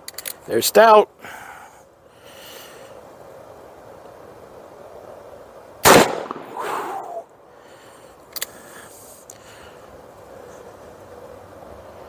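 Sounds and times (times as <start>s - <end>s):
revolver gunshot: 5.8s - 7.2s.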